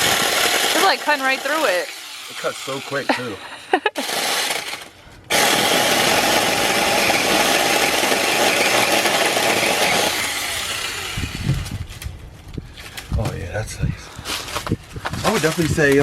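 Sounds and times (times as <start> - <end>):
mini chainsaw cutting wood: 0.0 - 3.4, 4.0 - 11.9.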